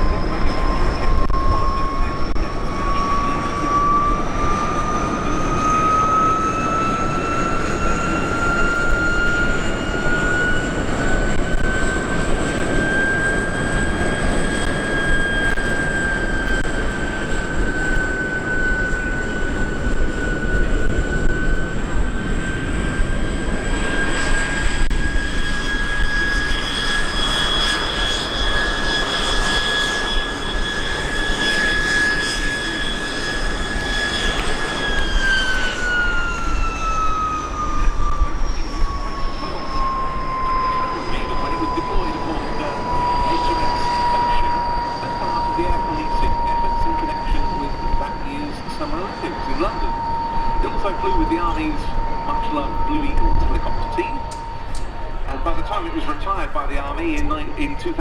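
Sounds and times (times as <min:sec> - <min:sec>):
helicopter turbine whine: 0:00.0 - 0:58.0
rotor and engine rush: 0:00.0 - 0:58.0.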